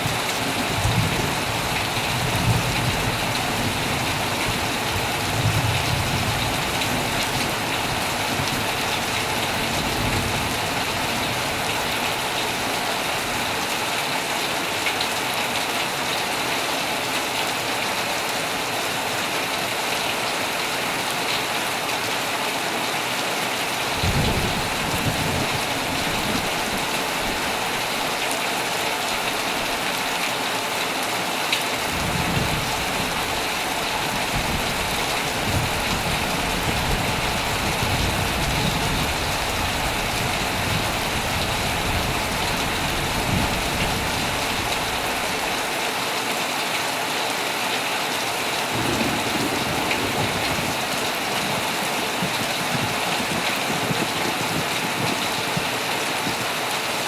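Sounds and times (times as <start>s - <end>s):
heavy rain on a tent: 0.0s - 57.0s
rolls of thunder: 24.0s - 27.6s, 48.7s - 56.4s.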